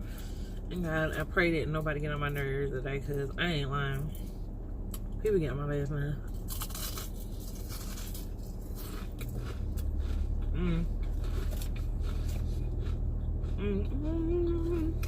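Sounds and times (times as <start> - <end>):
steady low hum: 0.0 - 15.0
chewing and crunching food: 6.2 - 15.0
person humming: 10.5 - 11.0, 13.5 - 15.0.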